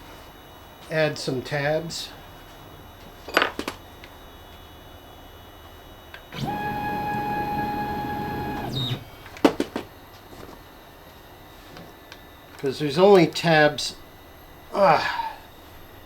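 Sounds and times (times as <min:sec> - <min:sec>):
stepper motor whine: 0:06.2 - 0:09.3.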